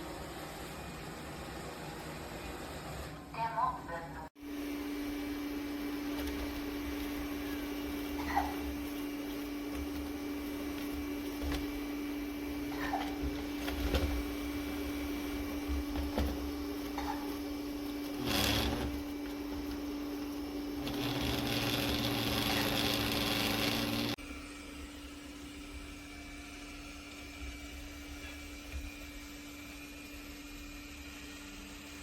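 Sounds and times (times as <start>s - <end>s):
robot vacuum motor hum: 4.4s - 24.2s.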